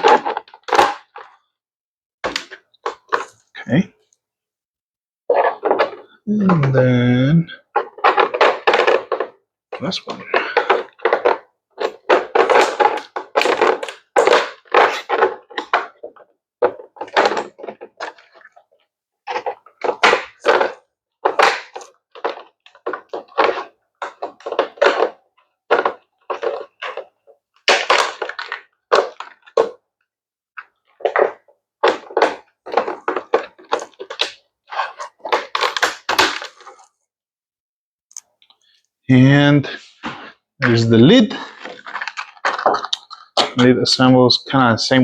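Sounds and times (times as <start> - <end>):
plastic pieces clattering: 7.8 - 29.8, 40.6 - 43.7.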